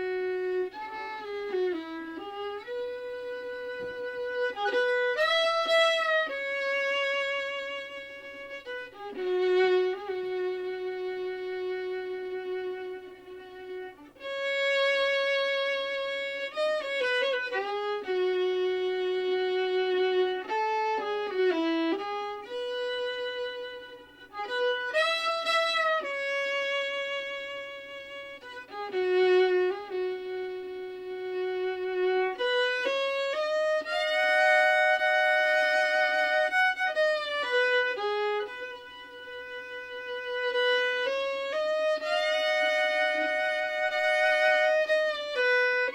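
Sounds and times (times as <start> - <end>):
solo violin slow melody: 0.0 - 45.9.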